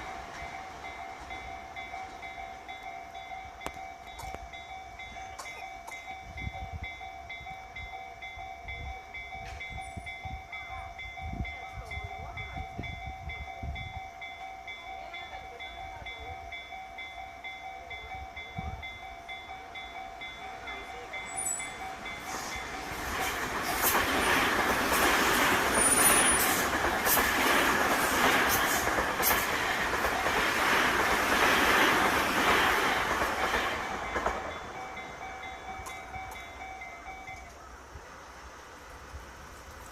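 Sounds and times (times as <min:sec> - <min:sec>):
level crossing warning bell: 0:00.0 - 0:37.8
train passing with wheel clatter: 0:00.0 - 0:39.9.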